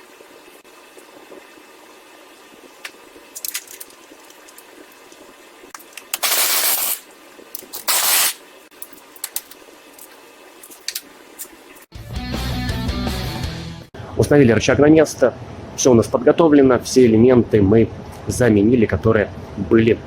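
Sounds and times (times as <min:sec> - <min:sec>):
pneumatic tool hissing: 0:06.2 - 0:07.0, 0:07.9 - 0:08.4.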